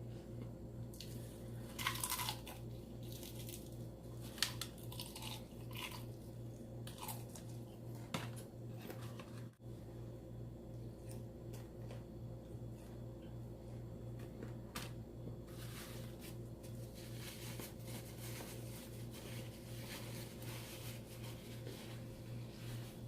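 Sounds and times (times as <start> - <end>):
crunchy chewing: 1.0 - 7.8.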